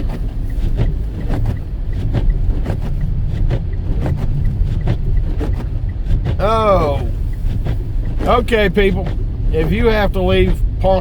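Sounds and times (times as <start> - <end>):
engine and tyre rumble: 0.0 - 11.0.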